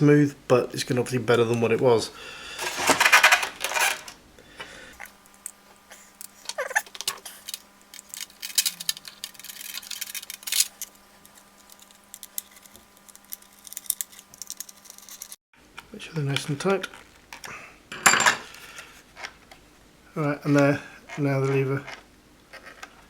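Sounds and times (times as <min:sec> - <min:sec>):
faint steady hum: 0:00.0 - 0:23.0
plastic parts and screws clicking: 0:02.6 - 0:04.2, 0:06.2 - 0:15.4.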